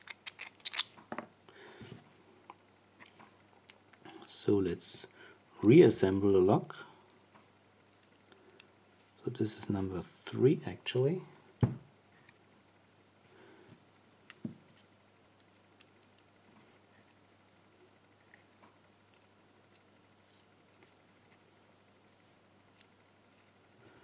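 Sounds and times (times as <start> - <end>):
faint clicks of small metal parts: 0.0 - 1.1, 2.5 - 4.4, 7.1 - 8.9.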